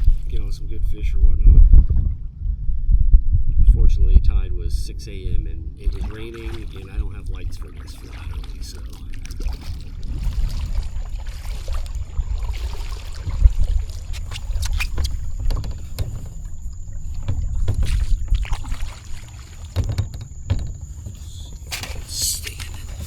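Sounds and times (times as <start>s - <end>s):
knocks and splashes against boat: 0.0s - 0.5s, 5.8s - 23.0s
wind rumble on microphone: 0.0s - 23.0s.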